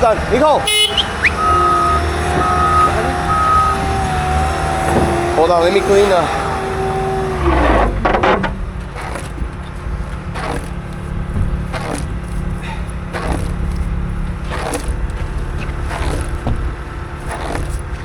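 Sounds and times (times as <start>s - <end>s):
vehicle engine idling: 0.0s - 18.0s
brush scraping strokes: 8.9s - 18.0s.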